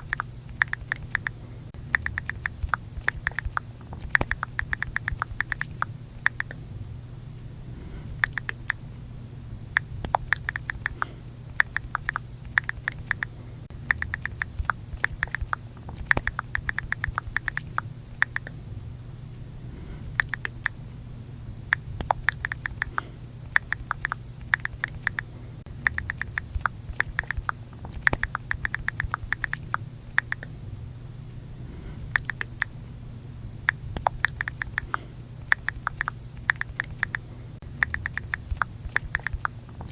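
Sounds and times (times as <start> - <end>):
low steady hum: 0.0 - 39.9.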